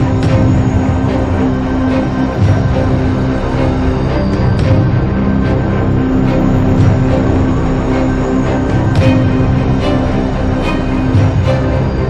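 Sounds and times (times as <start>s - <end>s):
sustained tones over low bass: 0.0s - 12.0s.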